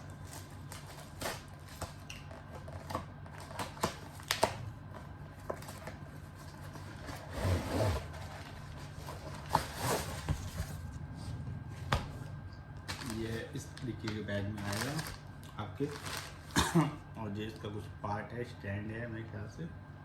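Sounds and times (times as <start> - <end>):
packaging rustling: 0.0 - 10.9, 12.8 - 16.7.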